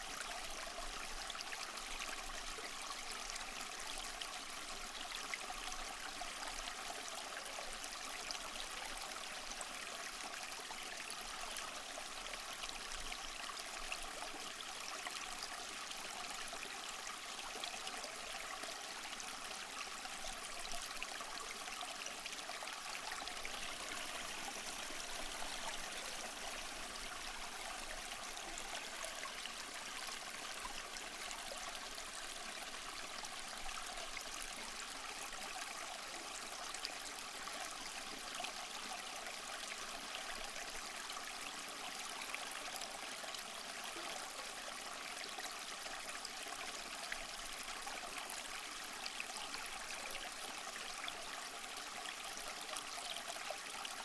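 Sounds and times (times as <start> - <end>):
small waterfall splashing: 21.5 - 43.6.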